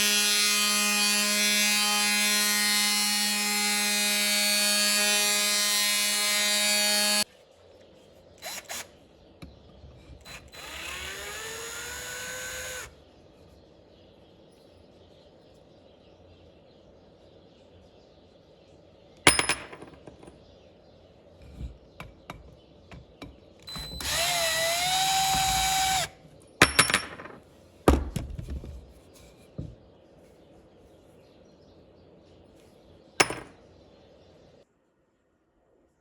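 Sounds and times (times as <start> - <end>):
electric power tool motor running: 10.2 - 12.9, 23.6 - 26.1.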